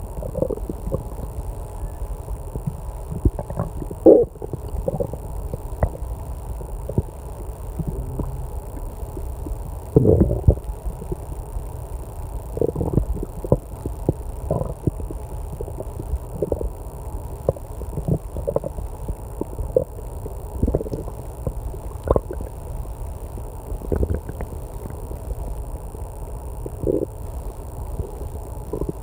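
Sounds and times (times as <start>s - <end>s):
stomach growling: 0.0s - 29.0s.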